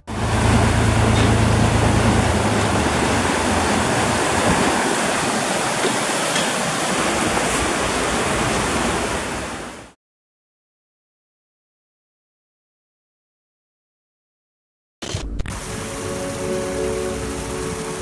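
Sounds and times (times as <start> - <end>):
low hum: 0.0 - 4.7
wind and tyre noise: 0.1 - 9.9.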